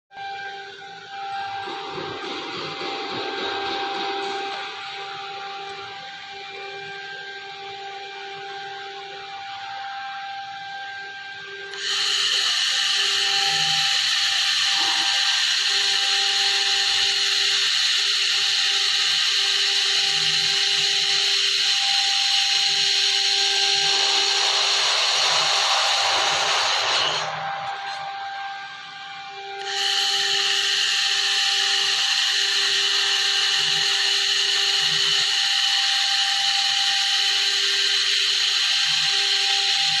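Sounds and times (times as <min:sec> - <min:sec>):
laser welder hissing: 0:11.7 - 0:28.0, 0:29.6 - 0:40.0
low tone cutting in and out: 0:22.6 - 0:31.3.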